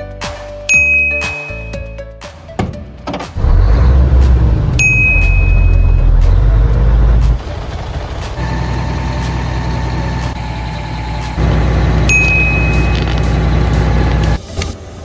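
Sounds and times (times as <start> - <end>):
diesel engine humming: 2.8 - 15.0
high thin tone: 4.8 - 6.2, 11.9 - 14.4.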